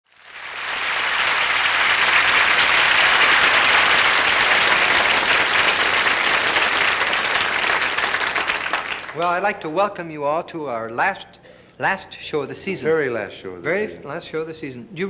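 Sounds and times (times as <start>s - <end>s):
audience applauding: 0.0s - 9.4s.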